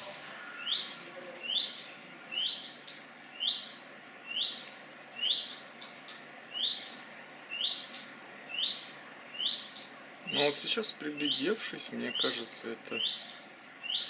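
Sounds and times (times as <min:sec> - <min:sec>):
bird whistling: 0:00.4 - 0:04.6, 0:05.2 - 0:10.5.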